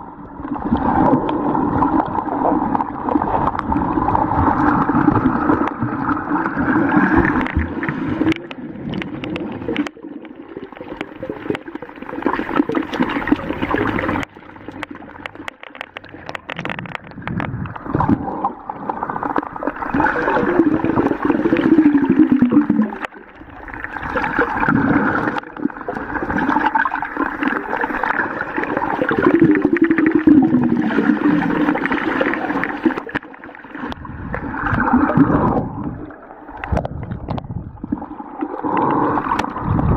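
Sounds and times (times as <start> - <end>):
underwater bubbling and gurgling: 0.0 - 39.9
crackling: 3.4 - 23.4.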